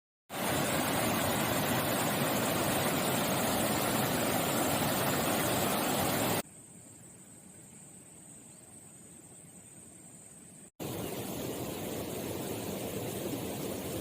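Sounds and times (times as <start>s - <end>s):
rushing water: 0.3s - 6.4s, 10.8s - 14.0s
faint high whine: 0.3s - 14.0s.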